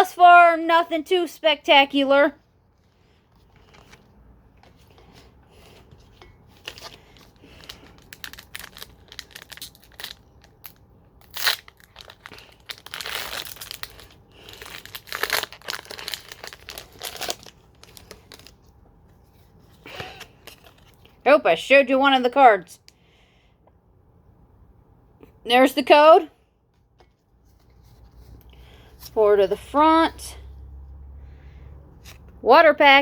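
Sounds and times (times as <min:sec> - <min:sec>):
foil wrapper crinkling and tearing: 0:06.5 - 0:18.7.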